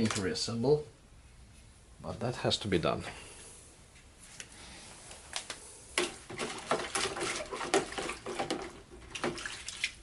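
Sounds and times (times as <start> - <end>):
plastic parts clicking and clattering: 0.0 - 0.3.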